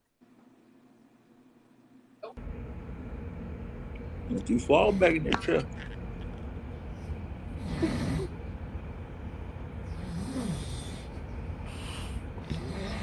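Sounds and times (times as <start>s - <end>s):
man snoring with snorts: 9.9s - 11.1s, 11.8s - 13.0s.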